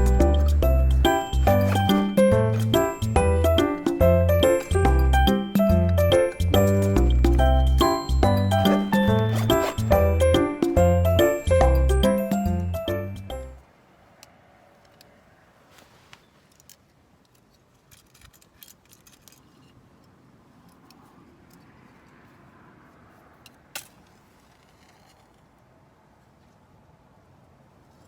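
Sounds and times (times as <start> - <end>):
clicks and handling noises: 0.0 - 10.7, 14.2 - 22.2
music track: 0.0 - 13.6.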